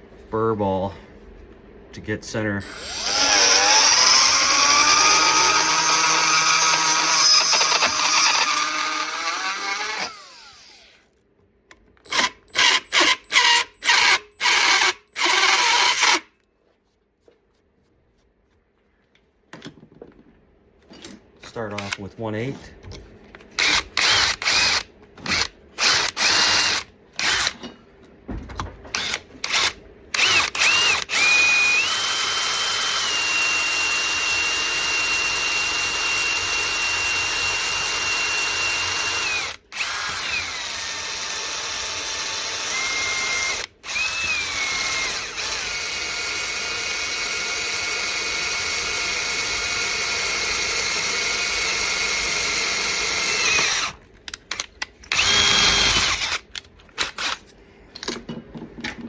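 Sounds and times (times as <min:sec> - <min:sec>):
electric drill whining: 0:02.6 - 0:11.0, 0:12.0 - 0:16.2, 0:23.6 - 0:27.6, 0:28.9 - 0:54.0, 0:55.1 - 0:57.4.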